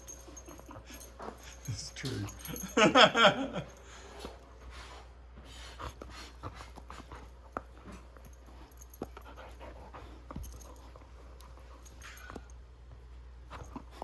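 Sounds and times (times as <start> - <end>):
dog panting: 3.8 - 12.3.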